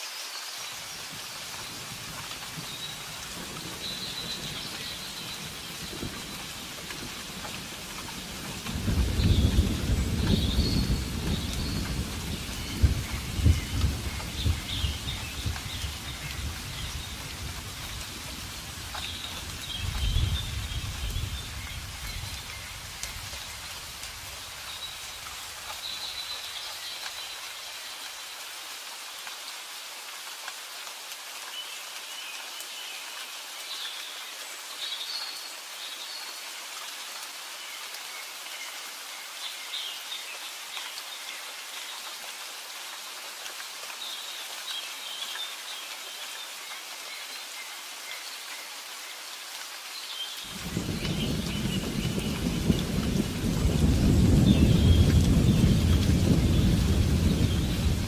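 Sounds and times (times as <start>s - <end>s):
steady rain falling: 0.0s - 58.0s
low rumble of thunder: 1.8s - 24.4s, 50.5s - 58.0s.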